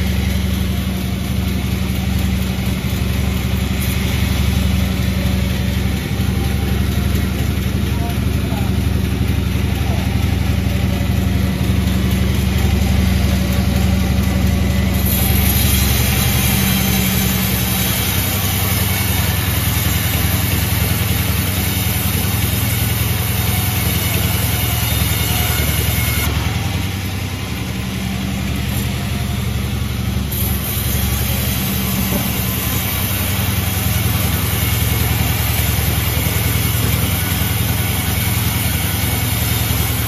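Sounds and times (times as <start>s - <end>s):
saw cutting wood hissing: 0.0s - 9.2s, 11.4s - 40.0s
sawmill machinery humming: 0.0s - 40.0s.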